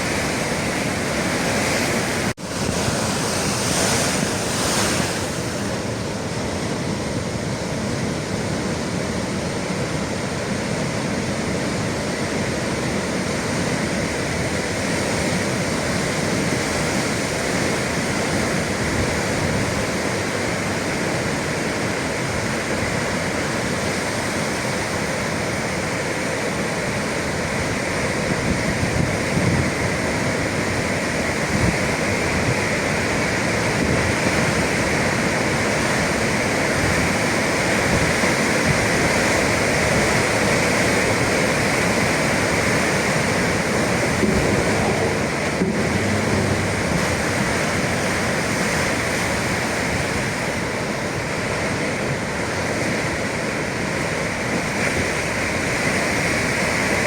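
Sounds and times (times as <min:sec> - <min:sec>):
sea waves breaking: 0:00.0 - 0:57.0
wind on microphone: 0:41.2 - 0:50.6.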